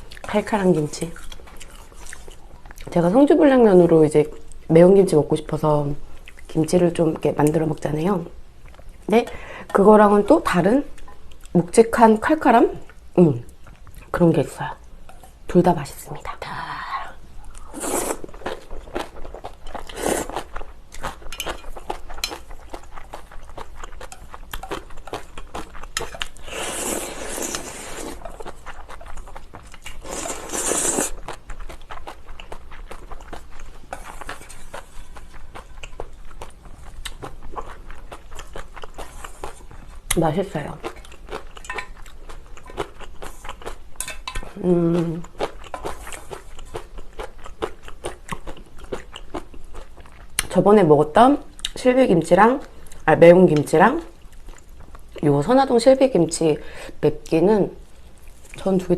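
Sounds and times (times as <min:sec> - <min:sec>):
crunching and chewing: 0:01.0 - 0:02.9, 0:17.5 - 0:44.6, 0:45.2 - 0:50.5
slurping noodles: 0:26.4 - 0:28.2, 0:30.0 - 0:31.2.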